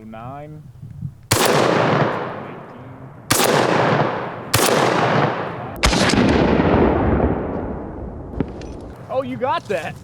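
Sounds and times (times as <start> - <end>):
shotgun shots with rolling echo: 1.3 - 9.0.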